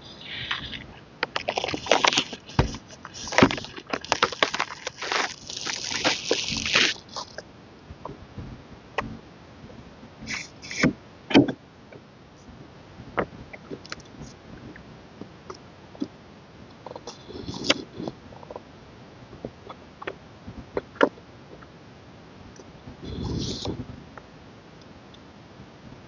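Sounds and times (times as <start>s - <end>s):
wrapping crinkling and rustling: 0.2s - 7.4s.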